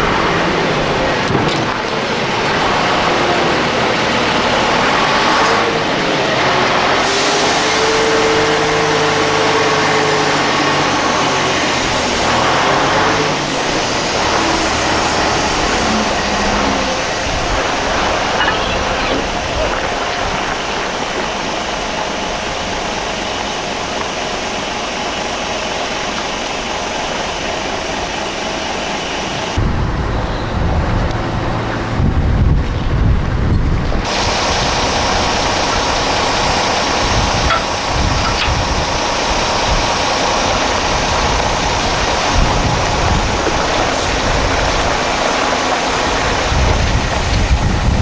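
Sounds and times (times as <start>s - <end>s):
heavy vehicle engine running: 0.0s - 48.0s
outdoor noise: 0.0s - 48.0s
wind rumble on microphone: 8.0s - 23.2s, 29.5s - 48.0s.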